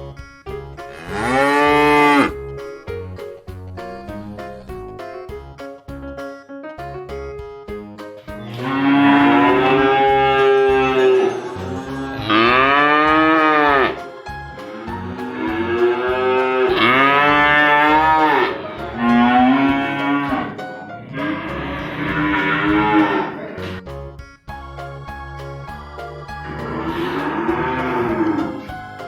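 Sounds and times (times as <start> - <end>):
light background music: 0.0 - 29.0
cow mooing: 1.0 - 2.3, 12.2 - 14.0, 15.3 - 20.5, 21.2 - 23.6, 26.7 - 28.7.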